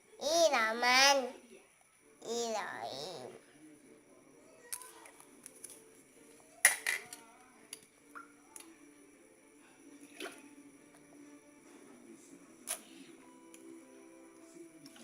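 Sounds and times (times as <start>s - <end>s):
faint child's voice: 0.0s - 1.4s, 2.2s - 3.4s, 4.4s - 5.2s.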